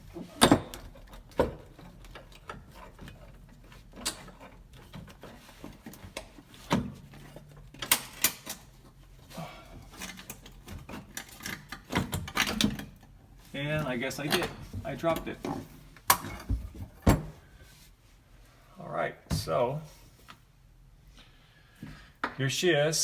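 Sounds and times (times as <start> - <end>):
metal clicks and clunks: 0.3 - 8.7, 9.9 - 13.2, 13.8 - 17.4.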